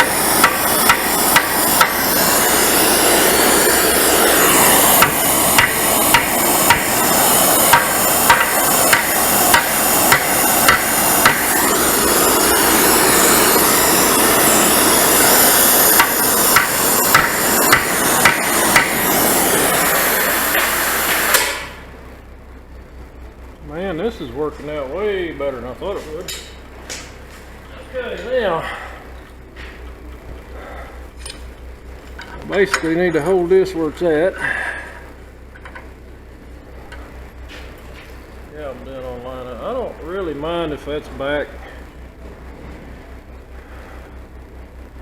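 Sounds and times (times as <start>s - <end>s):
hammer blows on hot steel: 0.0s - 21.9s
heating torch roaring: 0.0s - 45.0s.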